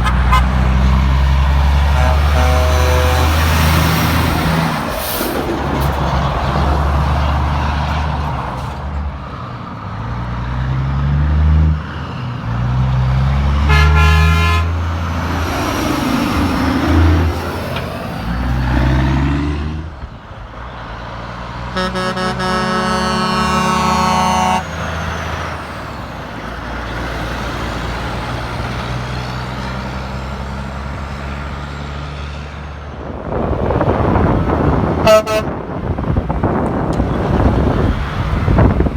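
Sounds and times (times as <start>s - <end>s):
truck air horn blasts: 0.0s - 0.9s, 1.7s - 3.9s, 13.6s - 14.9s, 21.7s - 24.8s, 35.0s - 35.6s
heavy truck engines: 0.0s - 38.9s.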